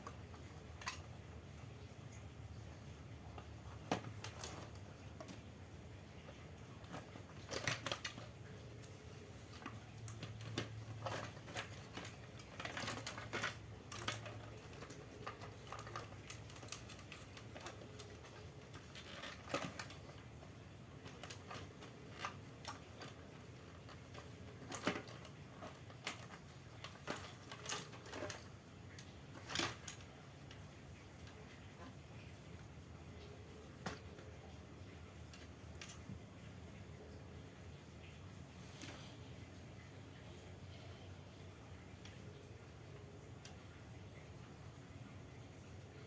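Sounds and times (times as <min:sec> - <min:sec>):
faint low hum: 0:00.0 - 0:46.0
small parts and tools clicking: 0:06.2 - 0:31.9.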